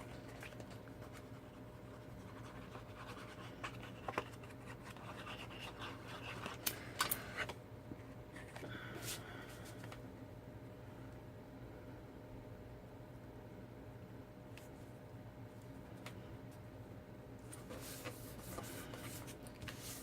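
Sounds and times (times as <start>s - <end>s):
paper rubbing and scratching: 0.0s - 6.6s
low steady hum: 0.0s - 20.0s.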